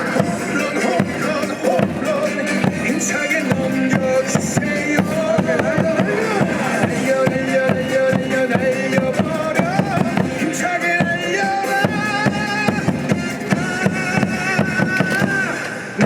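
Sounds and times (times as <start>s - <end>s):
stadium music over loudspeakers: 0.0s - 16.0s.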